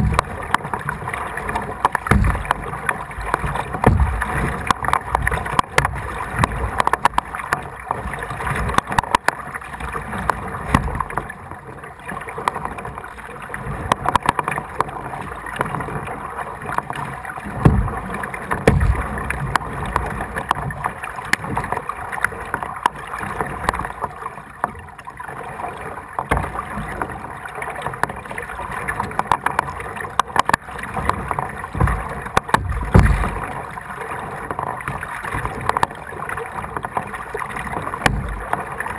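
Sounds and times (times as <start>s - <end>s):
dull thumps: 0.0s - 0.6s, 1.9s - 2.8s, 3.4s - 7.2s, 17.6s - 19.6s, 31.8s - 33.4s, 38.0s - 38.4s
paddle splashing and dripping: 0.0s - 38.9s
water lapping at a hull: 0.0s - 38.9s.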